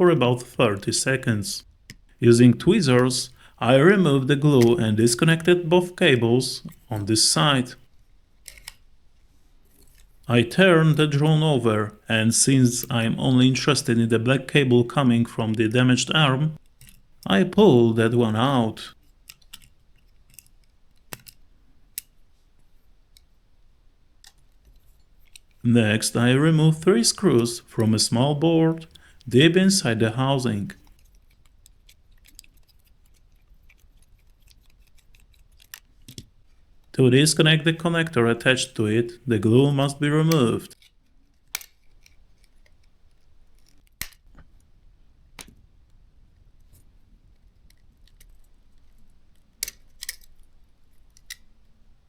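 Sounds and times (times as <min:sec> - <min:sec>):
small tools clicking on plastic: 0:08.4 - 0:08.9, 0:16.6 - 0:17.2, 0:19.0 - 0:22.2, 0:24.2 - 0:25.6, 0:30.8 - 0:36.6, 0:40.8 - 0:44.6, 0:46.7 - 0:51.6
metal tweezers clicking on plastic: 0:41.3 - 0:42.2, 0:49.6 - 0:50.4.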